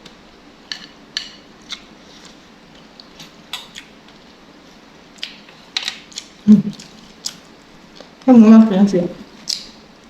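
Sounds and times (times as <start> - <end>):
chewing: 5.2 - 8.3, 9.3 - 9.8.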